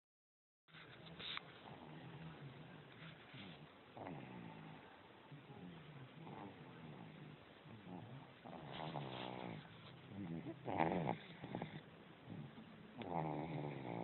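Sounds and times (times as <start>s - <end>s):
quiet breathing: 0.7s - 14.0s
rasping snores: 4.0s - 4.8s, 6.2s - 14.0s.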